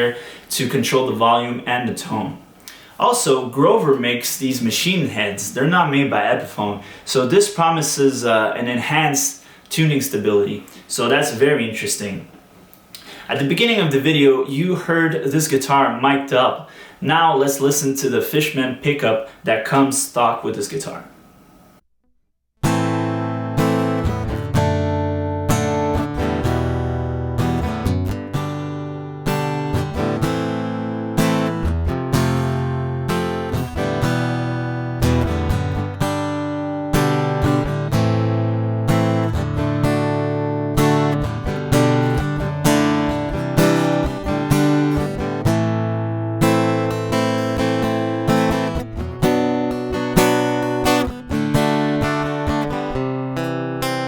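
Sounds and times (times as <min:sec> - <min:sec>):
acoustic guitar strumming chords: 0:22.6 - 0:54.0.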